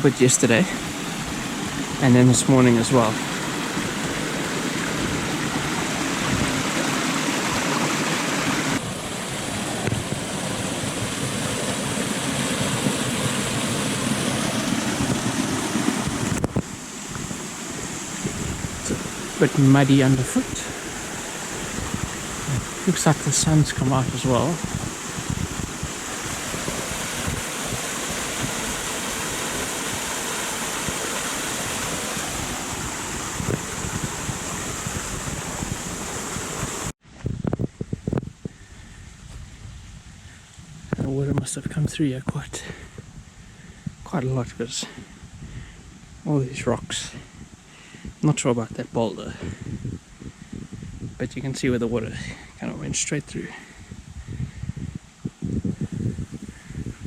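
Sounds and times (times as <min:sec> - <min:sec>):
rushing mountain stream: 0:00.0 - 0:37.0, 0:51.5 - 0:57.0
wind rumble on microphone: 0:00.5 - 0:57.0.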